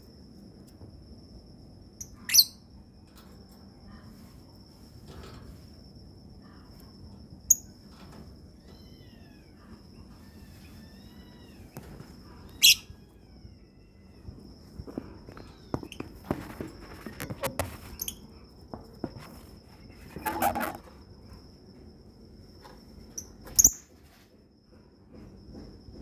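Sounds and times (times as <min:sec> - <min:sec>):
lovebirds chirping shrilly: 0:12.6 - 0:12.9.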